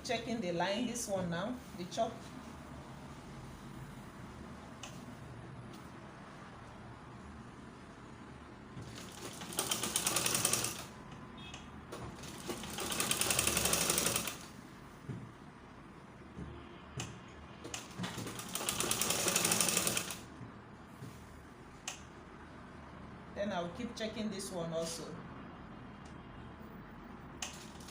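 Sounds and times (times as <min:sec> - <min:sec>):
sewing machine stitching: 0:08.8 - 0:11.0, 0:12.0 - 0:14.5, 0:17.7 - 0:20.2.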